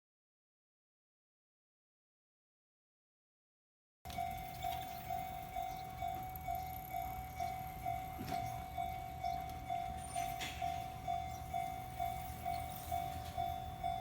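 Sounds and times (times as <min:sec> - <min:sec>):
electronic crossing bell: 0:04.1 - 0:14.0.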